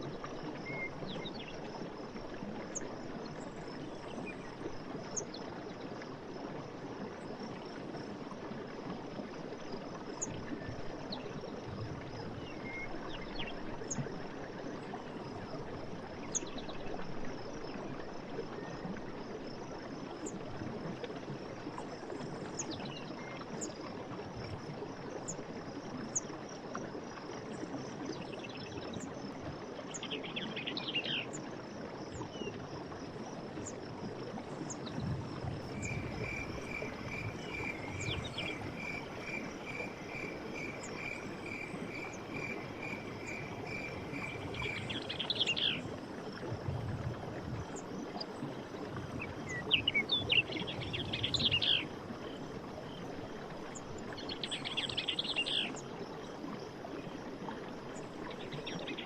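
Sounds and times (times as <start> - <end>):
rapid pulsed frog or insect call: 0.0 - 6.3, 32.0 - 59.0
running water: 0.0 - 59.0
high insect drone: 35.6 - 45.9.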